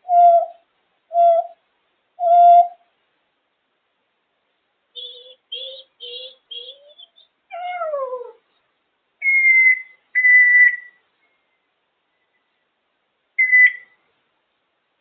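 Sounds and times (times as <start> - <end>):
parrot calling and whistling: 5.0 - 8.4, 9.2 - 11.0, 13.4 - 14.0.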